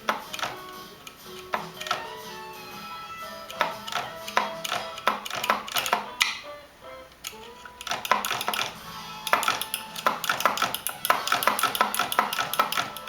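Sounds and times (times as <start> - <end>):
typewriter clacking: 0.0 - 2.2, 3.3 - 6.2, 7.4 - 13.0
typewriter ringing: 3.3 - 6.1, 7.8 - 13.0.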